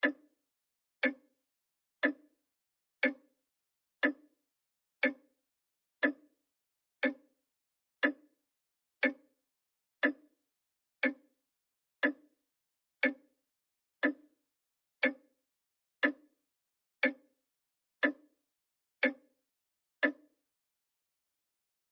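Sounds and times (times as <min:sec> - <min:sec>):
clock ticking: 0:01.0 - 0:01.2, 0:02.0 - 0:02.3, 0:04.0 - 0:04.3, 0:05.0 - 0:05.2, 0:06.0 - 0:06.2, 0:07.0 - 0:07.2, 0:08.0 - 0:08.2, 0:09.0 - 0:09.2, 0:10.0 - 0:10.2, 0:12.0 - 0:12.2, 0:14.0 - 0:14.3, 0:18.0 - 0:18.2, 0:19.0 - 0:19.3, 0:20.0 - 0:20.3.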